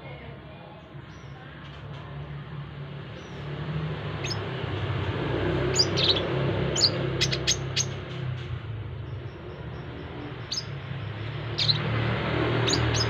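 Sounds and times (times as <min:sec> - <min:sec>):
roadside traffic rumble: 0:00.0 - 0:13.0
bird high sharp chirps: 0:05.6 - 0:08.3, 0:09.2 - 0:13.0.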